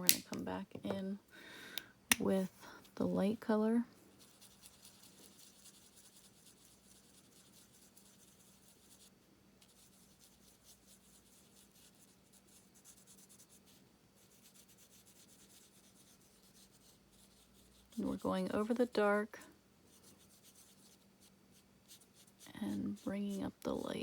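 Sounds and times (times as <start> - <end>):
marker scratching on card: 4.2 - 18.2, 19.9 - 23.6.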